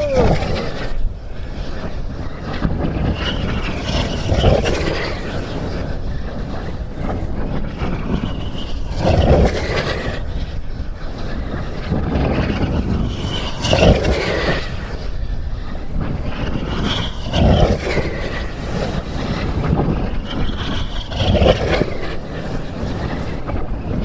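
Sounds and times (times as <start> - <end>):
rushing whoosh: 0.0 - 6.9
wind buffeting microphone: 0.0 - 24.0.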